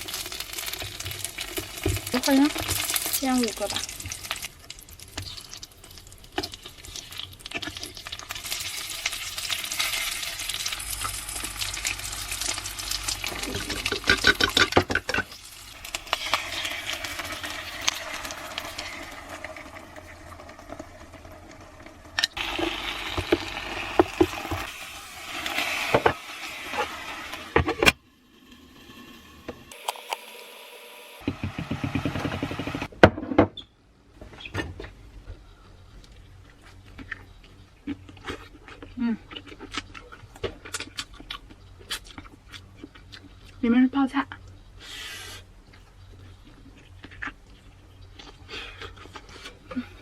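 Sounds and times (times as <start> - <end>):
dumplings sizzling in hot oil: 0.0 - 32.9.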